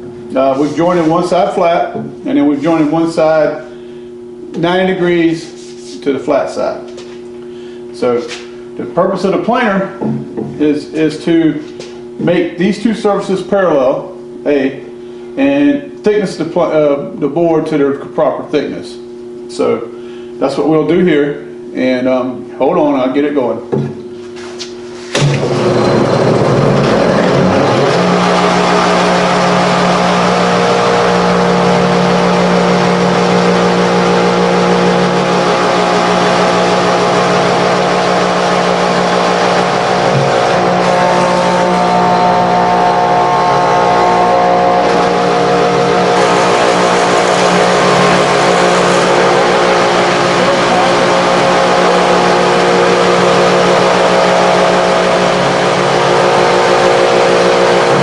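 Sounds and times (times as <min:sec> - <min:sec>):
planer motor running: 0:25.1 - 0:58.0.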